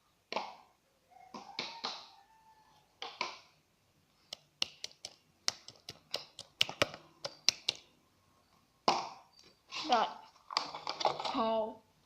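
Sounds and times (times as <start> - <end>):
sharp clicks and taps of containers: 3.0 - 3.5, 4.3 - 7.9.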